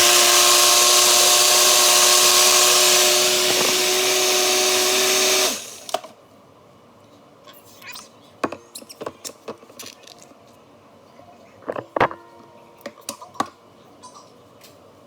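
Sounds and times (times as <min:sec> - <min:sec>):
hard objects clicking and knocking: 0:03.2 - 0:04.0.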